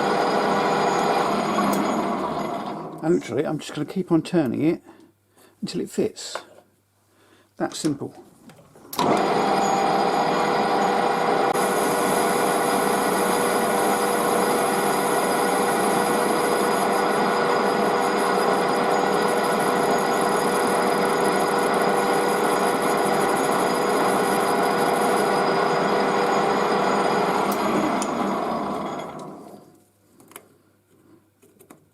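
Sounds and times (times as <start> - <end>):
metal lathe running: 0.0 - 3.0, 9.0 - 29.7.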